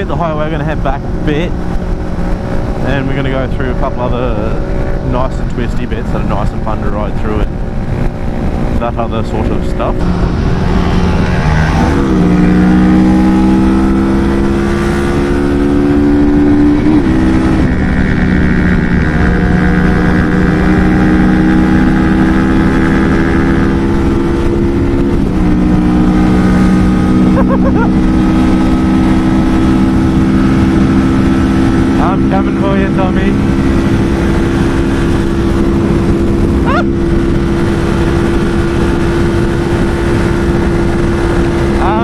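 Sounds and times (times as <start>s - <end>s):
motorcycle engine running: 0.0s - 42.0s
wind on microphone: 0.0s - 42.0s.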